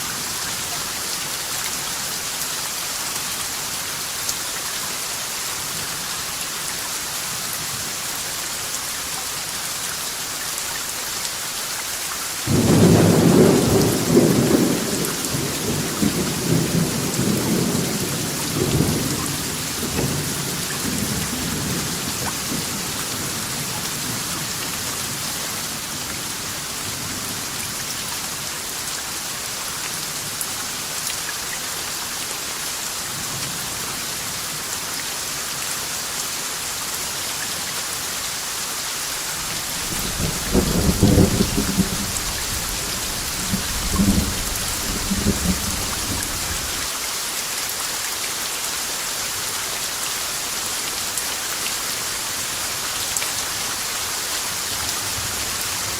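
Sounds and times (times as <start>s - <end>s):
steady rain falling: 0.0s - 55.9s
thunder rumbling: 39.6s - 46.9s.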